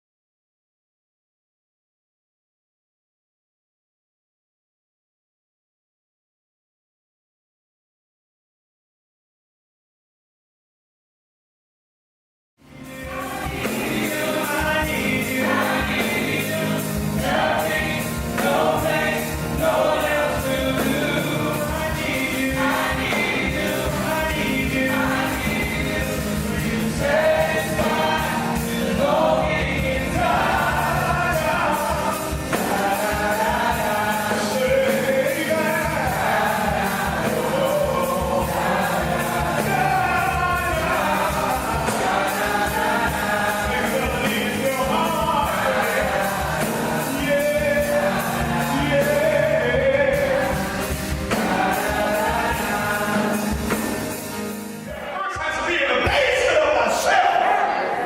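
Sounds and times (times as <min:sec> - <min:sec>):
instrumental accompaniment: 0:12.6 - 0:57.0
gospel choir singing: 0:12.6 - 0:58.0.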